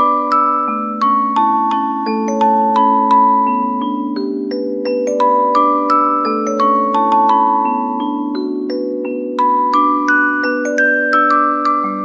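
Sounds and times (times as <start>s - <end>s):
slow melody of ringing notes: 0.0s - 12.0s.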